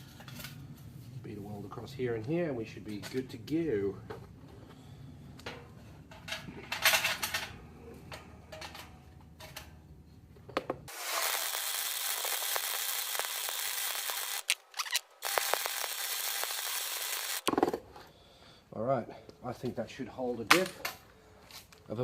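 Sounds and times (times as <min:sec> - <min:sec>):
arc welder crackling hiss: 0:10.9 - 0:17.5.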